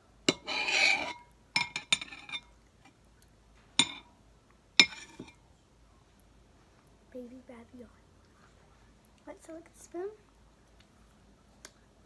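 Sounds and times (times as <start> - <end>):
spoon clinking on container: 0.3 - 2.5, 3.8 - 4.1, 4.8 - 5.3
spoon scraping container: 0.3 - 2.5, 4.8 - 5.3.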